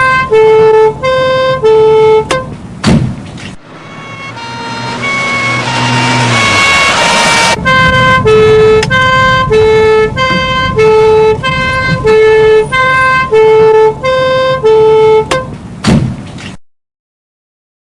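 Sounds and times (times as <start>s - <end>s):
loud rushing noise: 3.5s - 10.9s
police two-tone siren: 3.6s - 15.3s.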